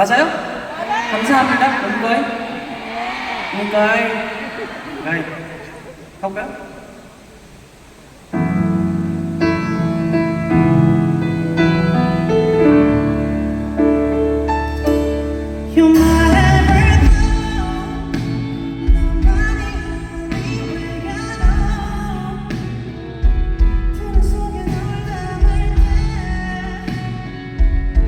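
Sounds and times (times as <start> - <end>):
drums: 5.6 - 28.0
piano chords: 8.2 - 28.0
live band playing: 8.4 - 28.0
person singing: 15.7 - 23.4.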